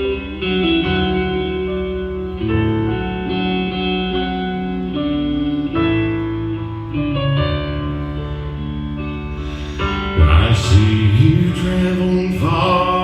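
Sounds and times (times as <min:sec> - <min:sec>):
country band guitar instrumental: 0:00.0 - 0:13.0
person singing: 0:09.4 - 0:13.0.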